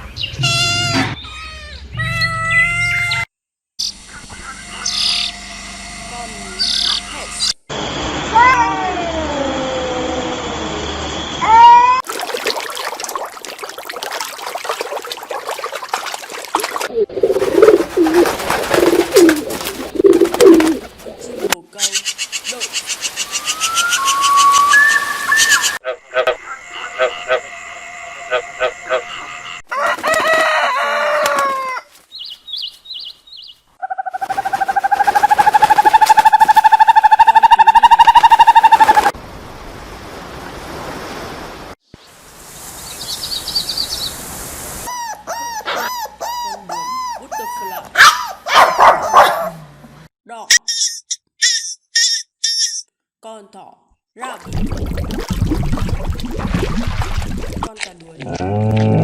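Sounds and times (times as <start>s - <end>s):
pigeon cooing: 16.9s - 21.6s, 33.9s - 39.1s
rooster crowing: 29.7s - 32.0s
mewing call gliding down: 34.2s - 39.1s
crackling trickling noise: 54.4s - 58.1s.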